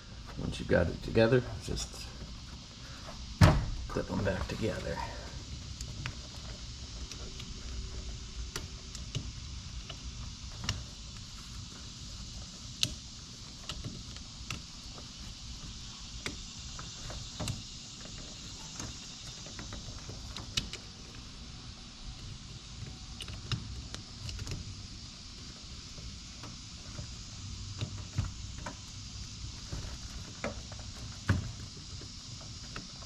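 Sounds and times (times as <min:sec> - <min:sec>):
sharp clicks and taps on wiring: 0:12.8 - 0:13.0.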